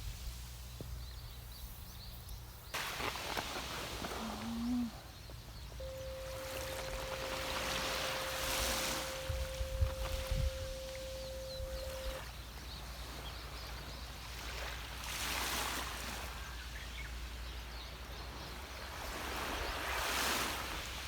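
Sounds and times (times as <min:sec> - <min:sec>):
waves washing on beach: 0:02.8 - 0:05.2, 0:05.8 - 0:12.2, 0:13.0 - 0:17.4
steady sine tone: 0:05.8 - 0:12.4.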